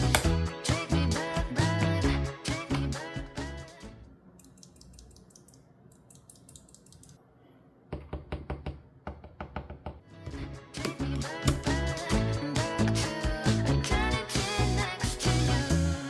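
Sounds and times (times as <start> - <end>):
keyboard clicks and taps: 10.9 - 11.8.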